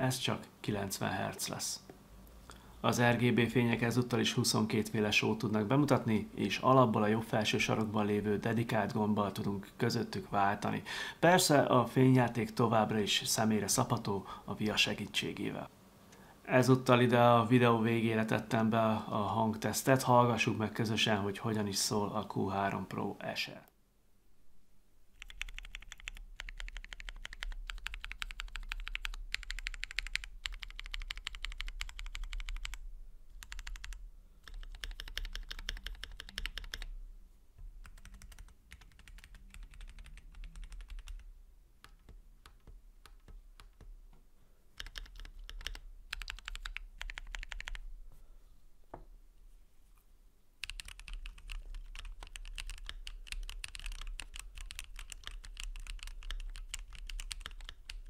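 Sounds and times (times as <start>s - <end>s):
mechanical keyboard typing: 25.2s - 36.9s, 37.8s - 43.9s, 44.8s - 47.8s, 50.6s - 58.0s.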